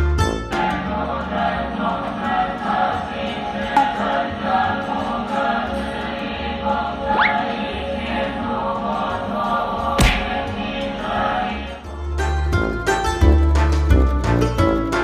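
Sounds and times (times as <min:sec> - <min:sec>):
steady musical backing: 0:00.0 - 0:15.0
massed voices chanting: 0:00.3 - 0:12.2.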